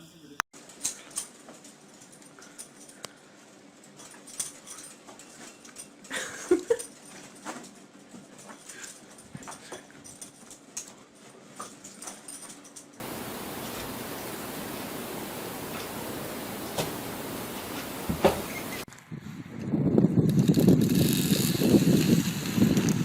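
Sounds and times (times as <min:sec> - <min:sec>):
light taps and rustles: 0:07.1 - 0:18.8
steady hiss: 0:13.0 - 0:18.9, 0:21.0 - 0:23.0.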